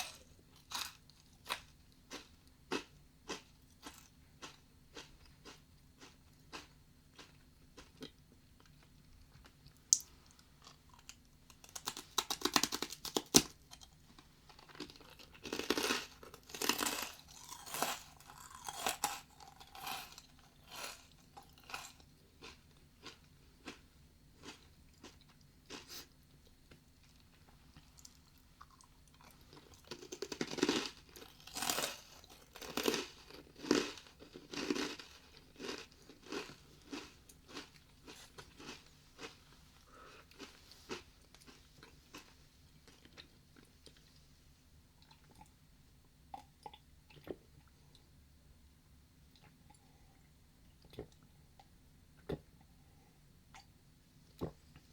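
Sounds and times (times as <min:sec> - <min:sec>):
rice crackers crunched and chewed: 0:00.0 - 0:39.4.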